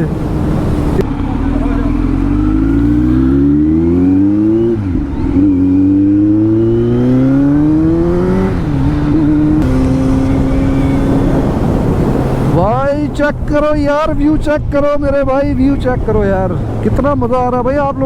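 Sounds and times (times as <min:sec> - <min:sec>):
motorcycle engine accelerating: 0:00.0 - 0:14.0.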